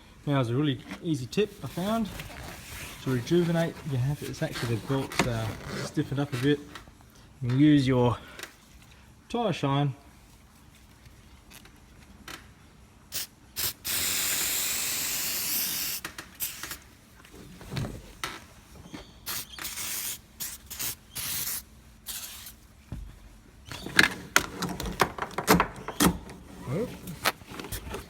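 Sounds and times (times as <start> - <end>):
spray can hissing: 13.1 - 16.8, 19.2 - 22.6.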